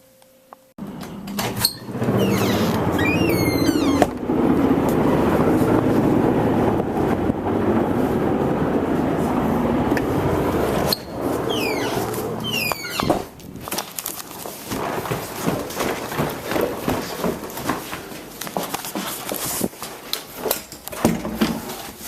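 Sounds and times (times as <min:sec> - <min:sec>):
helicopters droning overhead: 0:03.7 - 0:12.4.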